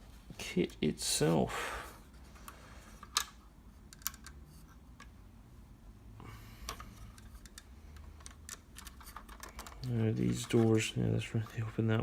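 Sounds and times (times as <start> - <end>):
plastic bricks clicking: 3.0 - 4.4, 6.7 - 10.6.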